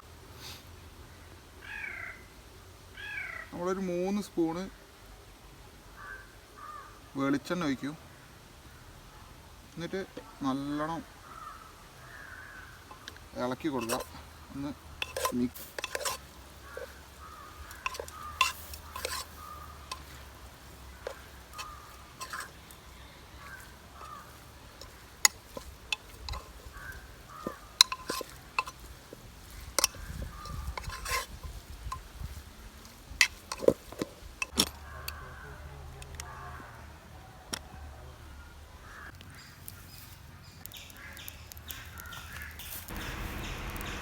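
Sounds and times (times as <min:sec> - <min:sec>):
metal spoon scraping a pot: 0:12.7 - 0:34.8.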